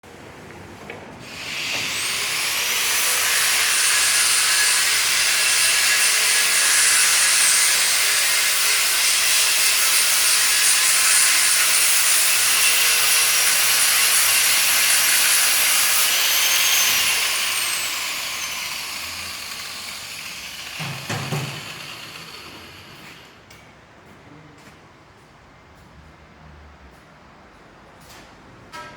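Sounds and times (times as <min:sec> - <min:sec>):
rotary power tool whining: 0:01.2 - 0:23.4.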